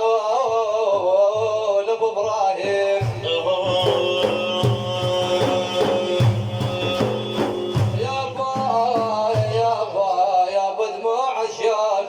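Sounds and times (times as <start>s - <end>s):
steady drum beat: 2.6s - 10.4s.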